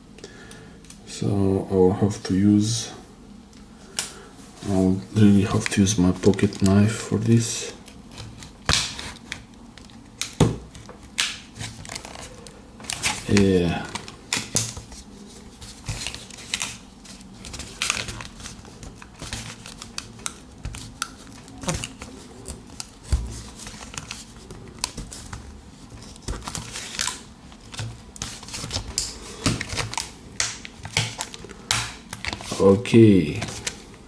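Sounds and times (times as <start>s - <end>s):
plastic crinkling and snapping: 5.2s - 34.0s.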